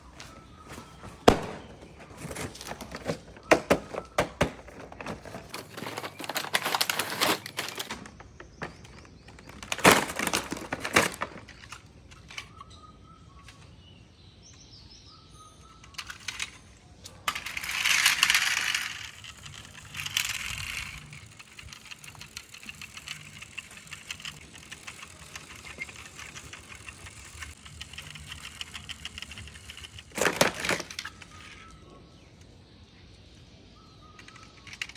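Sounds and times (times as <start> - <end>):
packaging rustling: 0.1 - 11.7.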